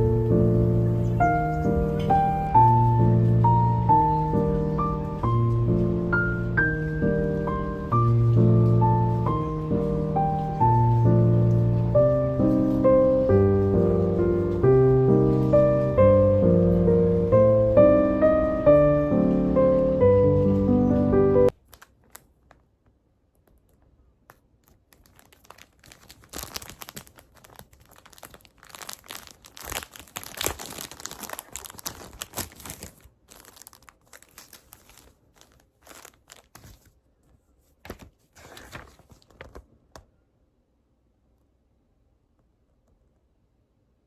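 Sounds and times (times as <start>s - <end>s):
crinkling and rustling: 20.3s - 40.1s.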